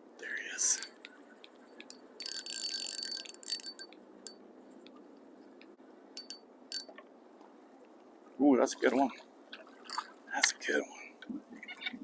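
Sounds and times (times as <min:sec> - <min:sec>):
fishing reel whirring: 0:00.6 - 0:00.9, 0:01.8 - 0:04.4.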